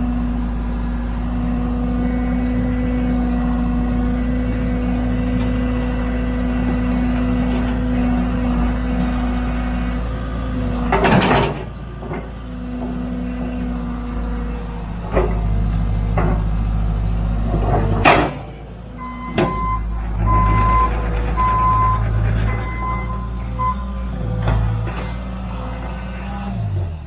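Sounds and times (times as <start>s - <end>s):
heavy machine engine running: 0.0s - 27.0s
sharp clanks and knocks: 10.6s - 13.8s, 14.5s - 26.0s
beeping alarm: 19.0s - 24.1s.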